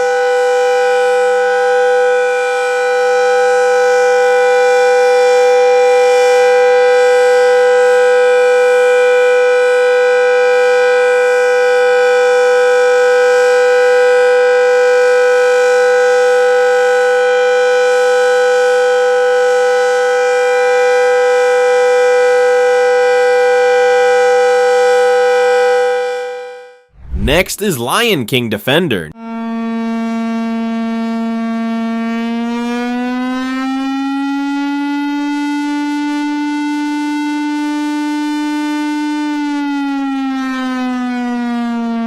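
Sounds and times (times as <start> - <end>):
loud steady warning siren: 0.0 - 26.9, 29.1 - 42.0.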